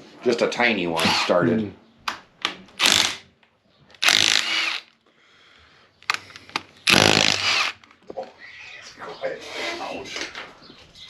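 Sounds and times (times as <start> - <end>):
power tool running: 2.8 - 3.2, 4.0 - 4.9, 6.9 - 7.8.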